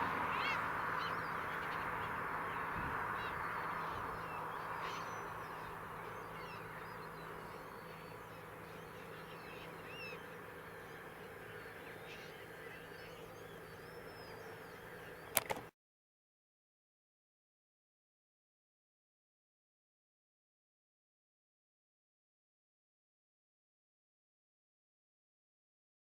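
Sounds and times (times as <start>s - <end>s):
gulls calling: 0.0s - 15.7s
tractor engine humming: 0.0s - 15.7s
sharp click: 15.3s - 15.7s.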